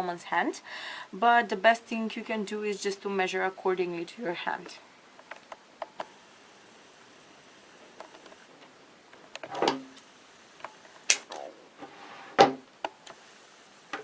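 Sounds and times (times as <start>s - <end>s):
objects scraping on table: 11.3s - 12.5s.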